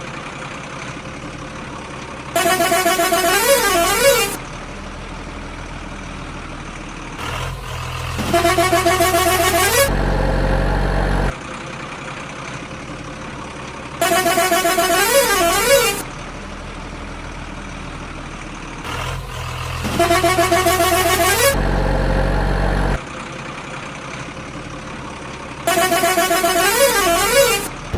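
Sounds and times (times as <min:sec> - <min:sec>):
low engine-style hum: 0:00.0 - 0:13.8, 0:15.4 - 0:27.9
toy horn jingle of stepped tones: 0:02.4 - 0:04.4, 0:08.2 - 0:09.9, 0:19.8 - 0:21.6, 0:25.7 - 0:27.7.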